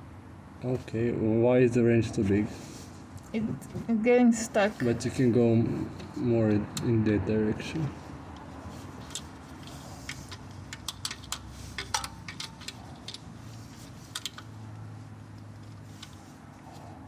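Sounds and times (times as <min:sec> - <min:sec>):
oil filter wrench clicking: 0:10.1 - 0:13.3, 0:14.1 - 0:14.5.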